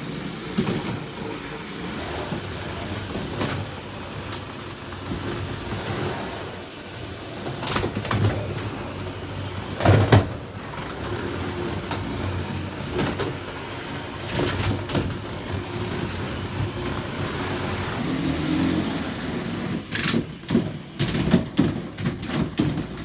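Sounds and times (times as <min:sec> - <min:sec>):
small electric motors whirring: 0:13.7 - 0:21.3
plastic parts clattering: 0:19.9 - 0:23.0.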